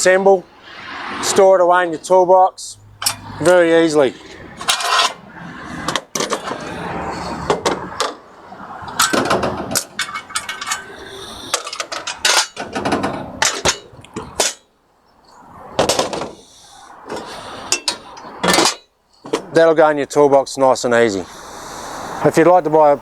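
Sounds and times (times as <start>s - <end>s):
metal parts clanking: 3.0s - 3.3s, 4.6s - 5.2s, 5.8s - 6.8s, 8.9s - 14.7s, 17.1s - 19.5s.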